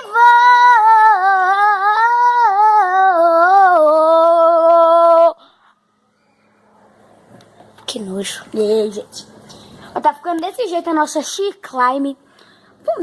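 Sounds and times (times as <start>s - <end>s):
child singing wordless line: 0.0s - 5.4s.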